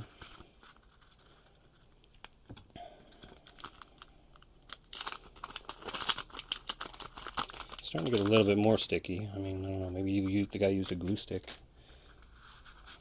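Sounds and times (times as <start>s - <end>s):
wax paper wrapper tearing and crinkling: 3.4s - 8.9s.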